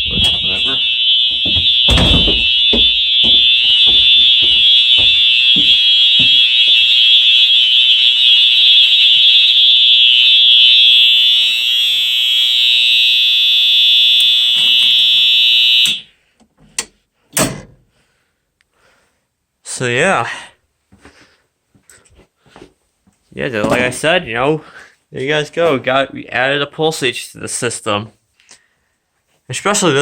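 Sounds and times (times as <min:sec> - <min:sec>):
fire alarm horn: 0:00.0 - 0:16.2.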